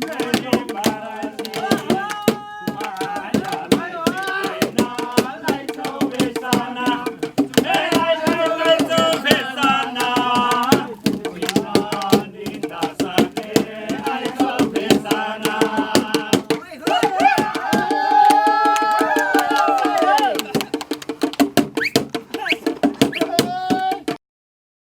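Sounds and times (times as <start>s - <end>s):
person singing: 0.0s - 20.8s
fast percussion beat: 0.0s - 24.2s.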